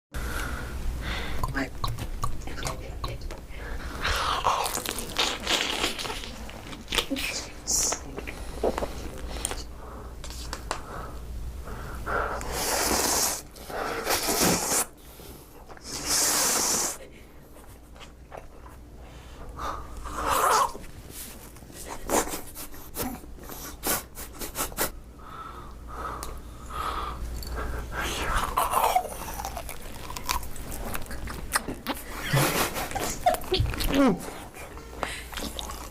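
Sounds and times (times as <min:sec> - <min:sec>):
person eating noisily: 0:01.2 - 0:09.7, 0:27.1 - 0:35.9.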